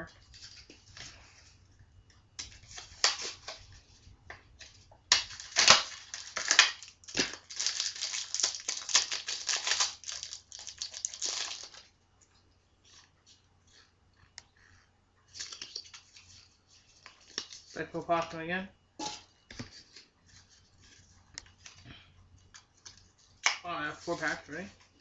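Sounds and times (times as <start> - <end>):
foil wrapper crinkling: 2.4 - 3.8, 4.6 - 11.9.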